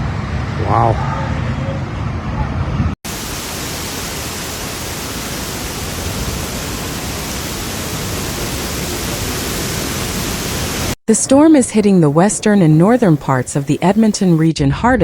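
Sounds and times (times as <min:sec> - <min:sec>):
heavy rain: 0:03.0 - 0:14.5.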